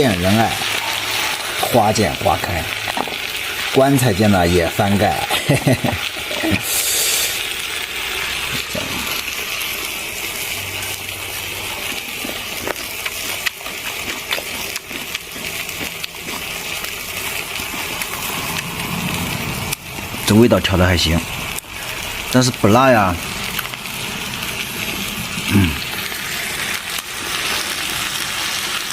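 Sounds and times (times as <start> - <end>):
steady hiss from stove: 0.0 - 28.9.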